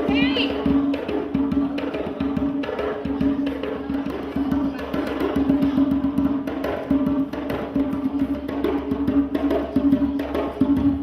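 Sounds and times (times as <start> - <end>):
percussion ensemble drumming: 0.0 - 11.0.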